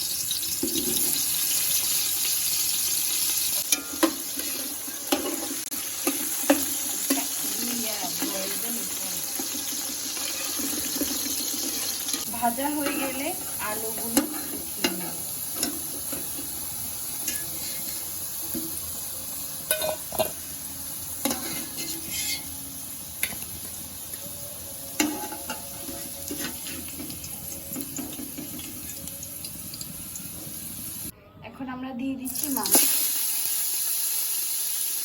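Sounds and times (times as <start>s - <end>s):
potatoes sizzling in hot oil: 0.0s - 31.1s, 32.3s - 35.0s
utensil scraping a pot: 10.0s - 14.6s, 17.2s - 18.2s, 21.2s - 22.6s, 25.0s - 29.1s.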